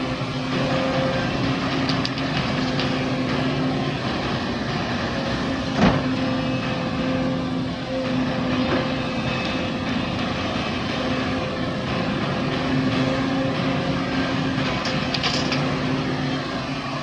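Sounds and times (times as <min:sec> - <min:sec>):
diesel machinery running: 0:00.0 - 0:17.0.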